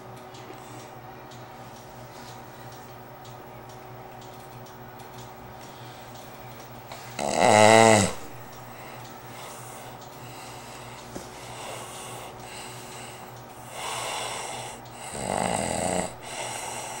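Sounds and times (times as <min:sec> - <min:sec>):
man snoring: 0:07.2 - 0:08.2, 0:13.7 - 0:17.0.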